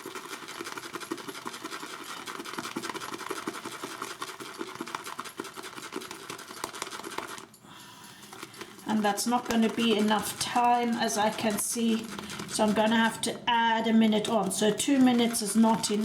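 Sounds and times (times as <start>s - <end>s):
shaving brush swishing in bowl: 8.3s - 13.2s.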